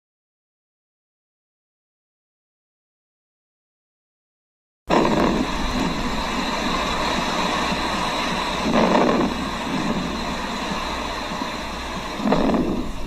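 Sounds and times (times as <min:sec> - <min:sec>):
breath sounds through stethoscope: 0:04.9 - 0:13.0.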